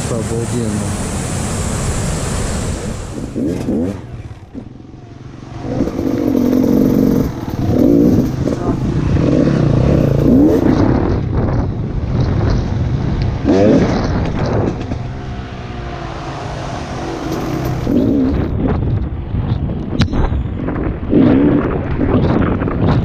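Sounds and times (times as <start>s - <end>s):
wind rushing: 0.0s - 23.0s
dirt bike engine revving: 2.0s - 11.6s, 12.3s - 18.5s.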